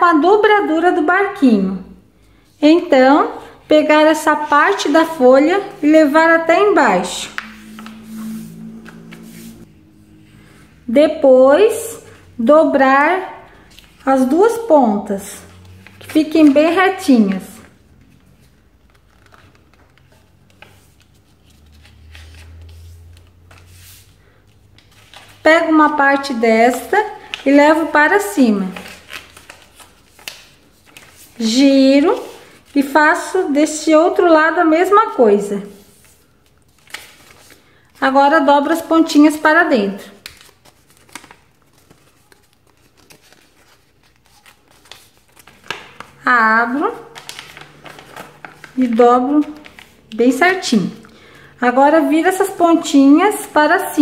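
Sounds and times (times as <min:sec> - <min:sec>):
low hum: 0:06.4 - 0:11.2
paper rustling as folded: 0:06.8 - 0:10.5, 0:15.4 - 0:33.5, 0:35.8 - 0:38.0, 0:40.1 - 0:50.7.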